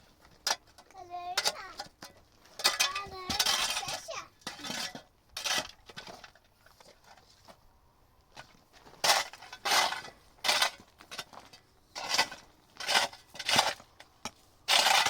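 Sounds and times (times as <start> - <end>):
rough scraping strokes: 8.8 - 15.0.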